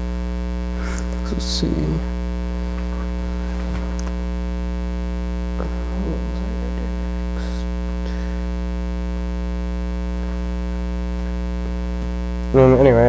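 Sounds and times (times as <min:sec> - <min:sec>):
electrical mains hum: 0:00.0 - 0:13.0
low murmur of voice: 0:00.7 - 0:04.2, 0:05.5 - 0:08.6.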